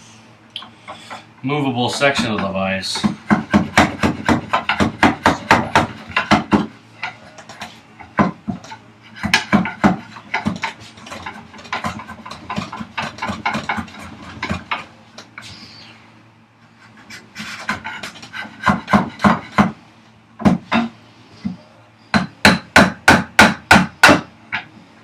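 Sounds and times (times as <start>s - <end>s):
hand rasp filing wood: 9.1s - 14.7s, 16.8s - 19.7s.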